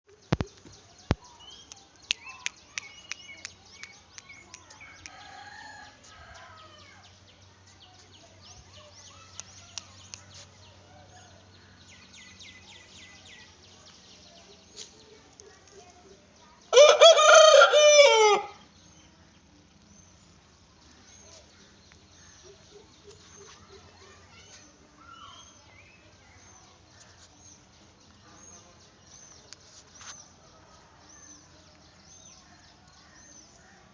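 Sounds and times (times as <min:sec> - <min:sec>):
rooster crowing: 0:16.7 - 0:18.6.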